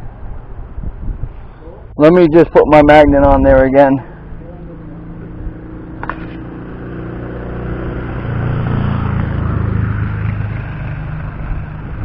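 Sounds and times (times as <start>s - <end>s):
vehicle engine passing: 3.8s - 12.0s.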